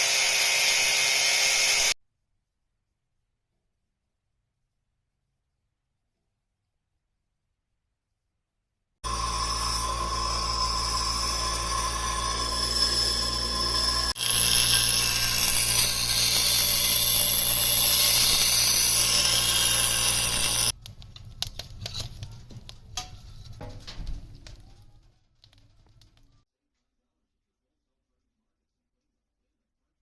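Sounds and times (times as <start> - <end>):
electric power tool running: 0.0 - 2.0, 9.0 - 20.7
hissy power tool sound: 0.0 - 2.0, 9.0 - 20.7.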